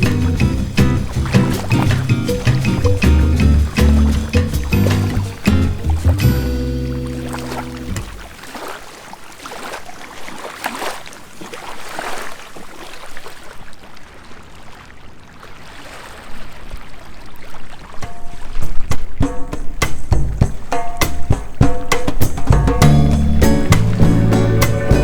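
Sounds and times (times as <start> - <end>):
bossa nova music: 0.0 - 8.2, 20.4 - 25.0
sea waves washing onto shore: 0.0 - 19.8.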